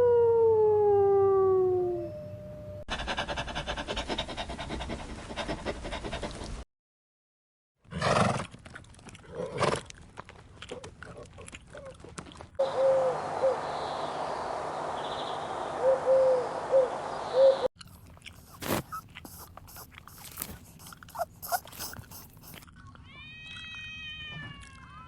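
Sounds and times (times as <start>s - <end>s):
animal chewing: 8.4s - 12.6s, 17.8s - 23.0s.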